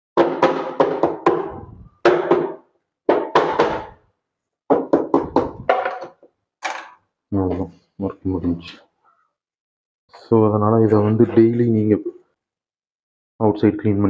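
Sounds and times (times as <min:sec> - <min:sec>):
sharp hollow knocks on metal parts: 0:00.2 - 0:04.0.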